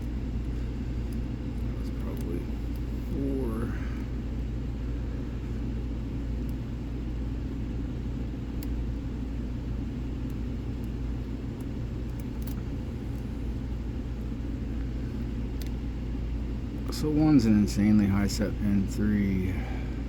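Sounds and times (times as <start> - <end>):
low background rumble and hum: 0.0 - 20.0.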